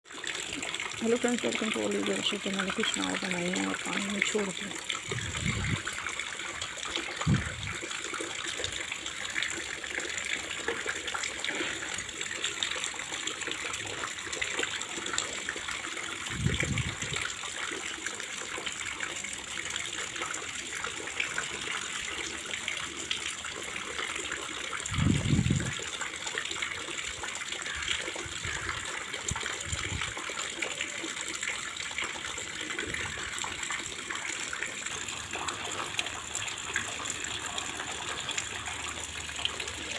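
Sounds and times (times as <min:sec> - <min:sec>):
flowing water: 0:00.0 - 0:39.9
rain falling: 0:24.4 - 0:39.9.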